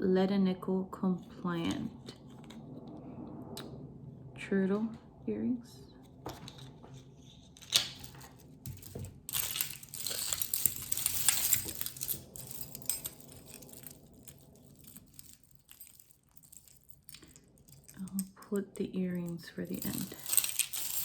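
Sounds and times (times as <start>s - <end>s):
packaging crinkling: 7.6s - 18.1s
jewelry pieces clicking: 7.7s - 21.0s.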